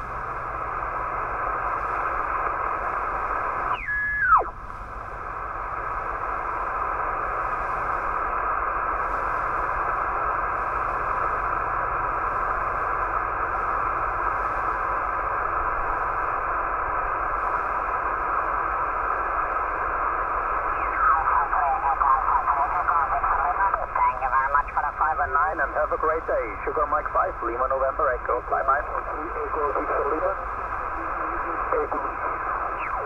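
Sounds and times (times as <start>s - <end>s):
radio band hiss: 5.4s - 33.0s.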